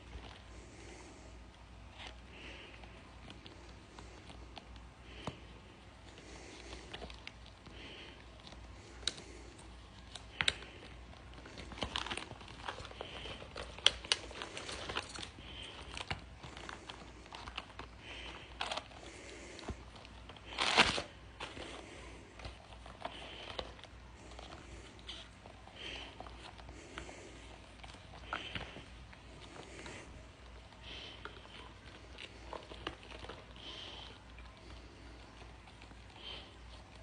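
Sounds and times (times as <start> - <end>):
heavy breathing: 0.0 - 37.0
paper packaging crinkling: 6.6 - 26.8.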